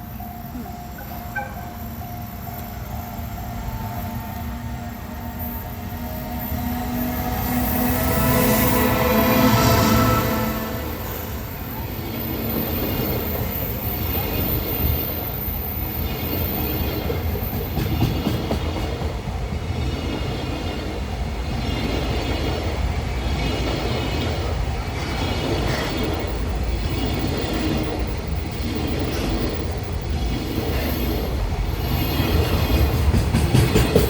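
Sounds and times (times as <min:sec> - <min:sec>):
train wheels rumbling on rail: 0:00.0 - 0:34.0
wheels clicking over rail joints: 0:12.4 - 0:34.0.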